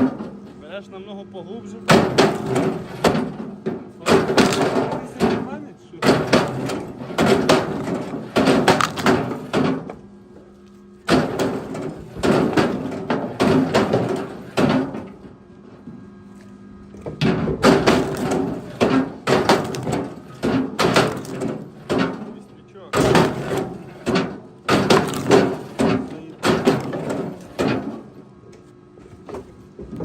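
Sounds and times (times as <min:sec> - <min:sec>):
firewood logs knocking: 0:01.9 - 0:10.0, 0:11.0 - 0:15.1, 0:17.0 - 0:22.4, 0:23.0 - 0:28.1, 0:29.0 - 0:30.0.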